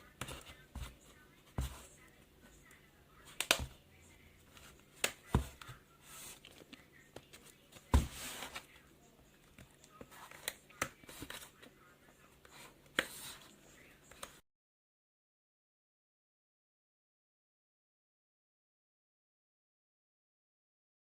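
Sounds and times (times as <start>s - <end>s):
faint scraping: 4.5s - 8.8s.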